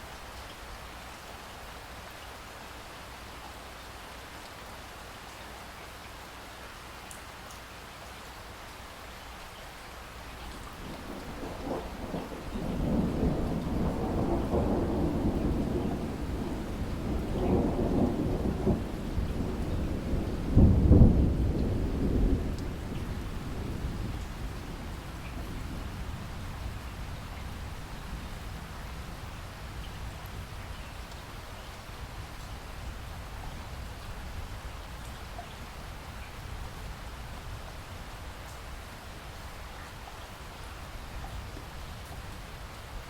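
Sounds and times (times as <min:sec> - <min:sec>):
steady rain: 0:00.0 - 0:43.0
thunder rolling: 0:10.7 - 0:28.1.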